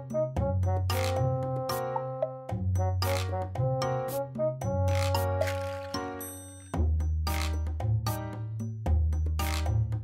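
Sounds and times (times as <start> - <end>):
upbeat background music: 0.0 - 10.0.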